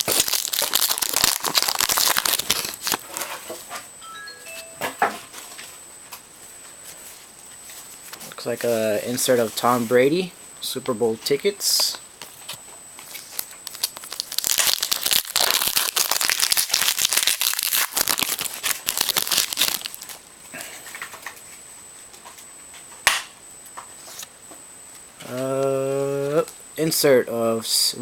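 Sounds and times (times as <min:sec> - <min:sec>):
wrapper tearing and crinkling: 0:00.0 - 0:03.4, 0:13.1 - 0:20.2.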